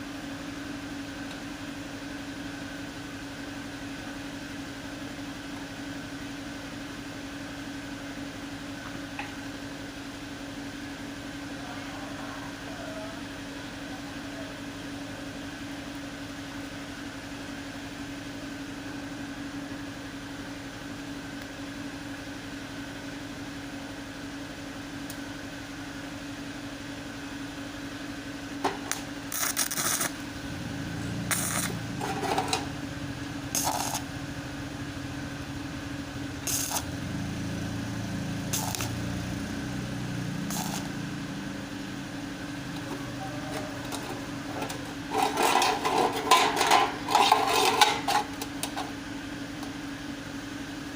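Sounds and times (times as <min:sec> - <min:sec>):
machine hum with low whine: 0:00.0 - 0:50.9
low rumbling handling noise: 0:31.0 - 0:32.8, 0:42.8 - 0:49.0.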